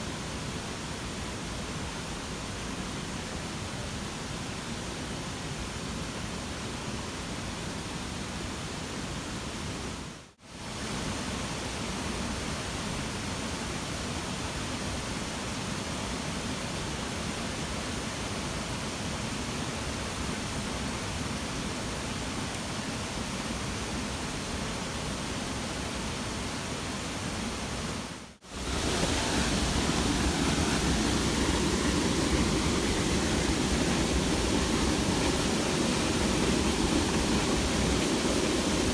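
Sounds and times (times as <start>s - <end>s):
steady rushing hiss: 27.8s - 38.9s.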